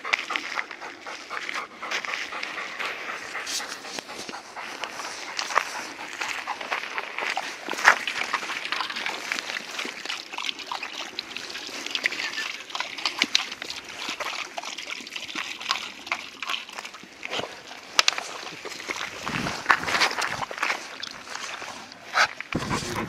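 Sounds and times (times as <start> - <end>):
footsteps in wet snow: 0.0 - 10.2, 17.0 - 23.0.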